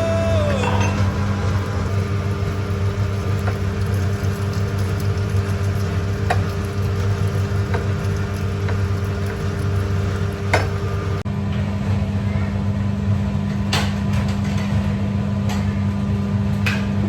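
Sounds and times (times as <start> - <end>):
kitchen appliance motor hum: 0.0 - 11.2.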